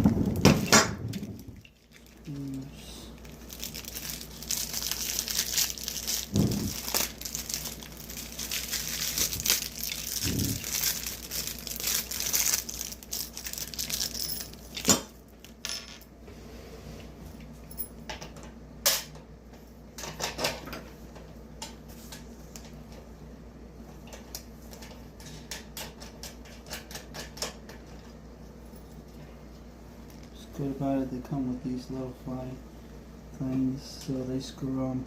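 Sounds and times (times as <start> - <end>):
plastic packaging rustling: 0.0 - 14.9.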